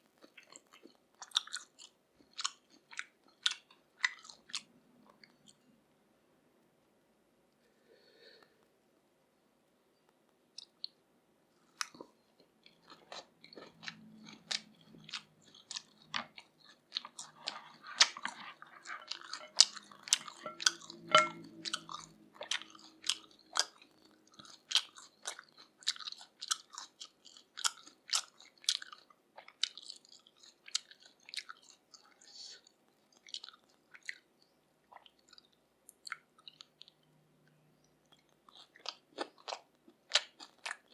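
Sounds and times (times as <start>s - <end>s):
wet chewing: 0.1s - 5.5s, 11.7s - 40.9s.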